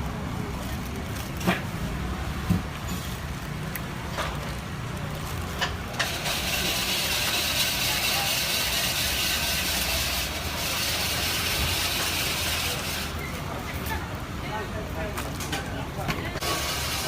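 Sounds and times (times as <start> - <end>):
ice shaving machine grinding: 5.9 - 13.2, 16.4 - 17.0.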